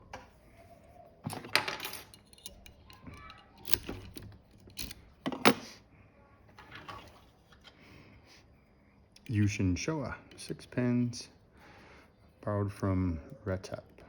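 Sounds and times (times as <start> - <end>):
lockpicking tools jingling: 1.3 - 5.6
sharp lock clicks: 2.1 - 5.6.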